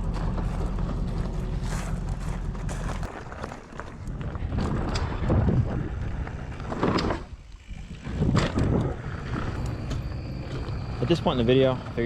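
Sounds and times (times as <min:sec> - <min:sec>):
mountain bike trail rumble: 0:00.0 - 0:12.0
wind on microphone: 0:04.0 - 0:11.1.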